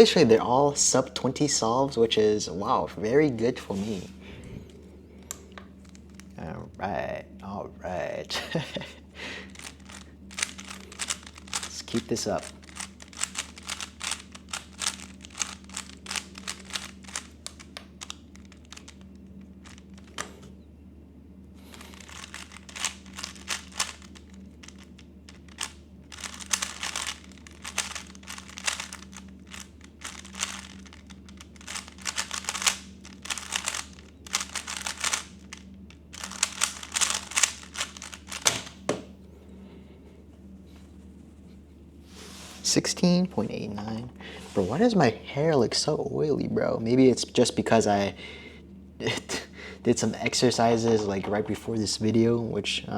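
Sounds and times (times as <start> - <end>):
puzzle cube clicking: 9.5 - 19.0, 19.6 - 20.3, 21.9 - 38.8.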